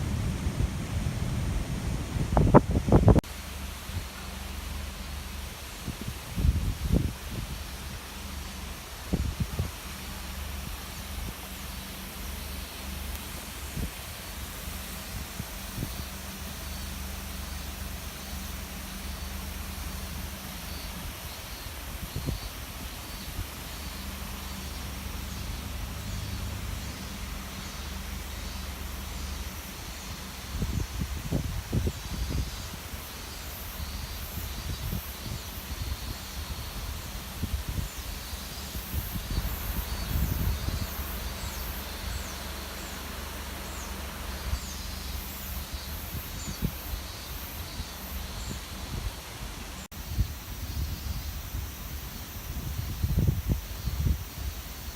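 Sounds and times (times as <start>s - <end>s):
wind buffeting microphone: 0.0s - 3.2s, 5.7s - 8.0s, 9.0s - 9.8s, 30.4s - 33.0s, 33.8s - 42.3s, 50.0s - 54.9s
river rushing: 0.0s - 50.6s.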